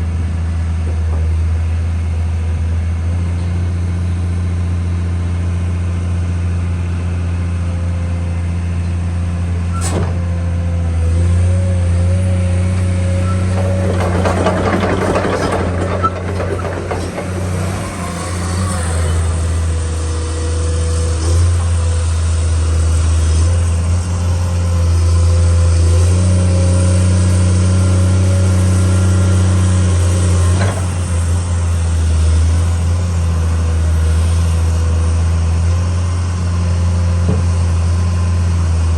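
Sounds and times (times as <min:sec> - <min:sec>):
excavator diesel engine droning: 0:00.0 - 0:38.9
rattling noise: 0:13.3 - 0:24.4.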